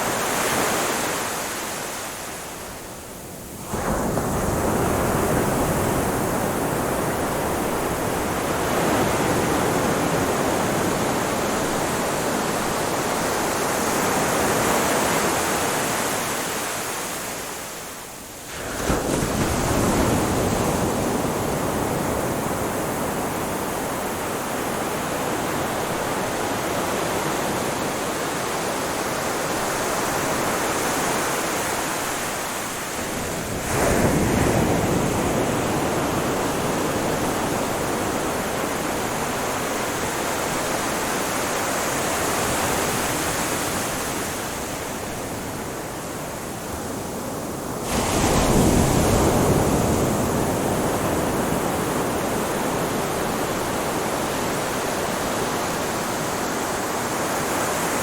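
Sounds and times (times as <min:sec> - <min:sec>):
ocean waves washing on shore: 0:00.0 - 0:58.0.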